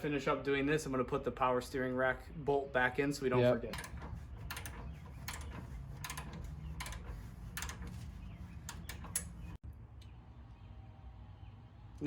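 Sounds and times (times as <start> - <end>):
hand tools clicking and clinking: 3.7 - 9.5.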